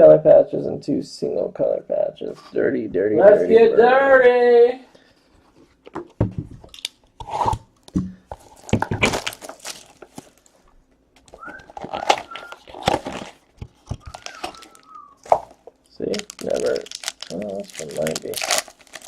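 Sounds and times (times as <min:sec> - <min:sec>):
wrapper crinkling and tearing: 0:08.4 - 0:10.5, 0:11.2 - 0:19.0
cards clicking and rustling: 0:11.2 - 0:19.0.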